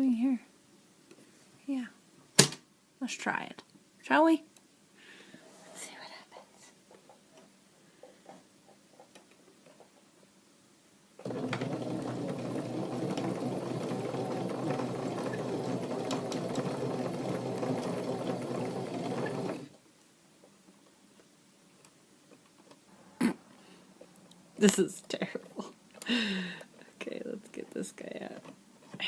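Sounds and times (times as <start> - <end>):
sewing machine running: 11.2 - 19.8.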